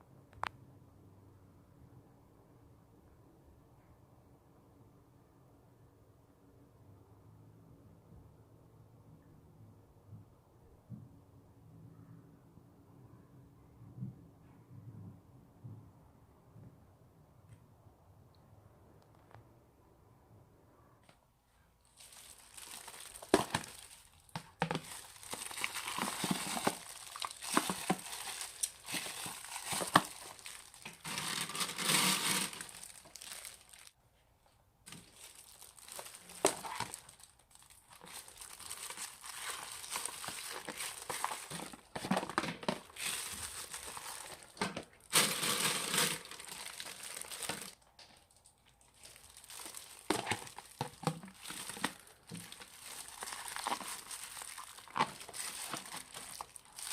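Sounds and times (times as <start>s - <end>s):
slime crackling and popping: 22.0s - 33.9s, 34.9s - 42.0s, 42.9s - 56.9s.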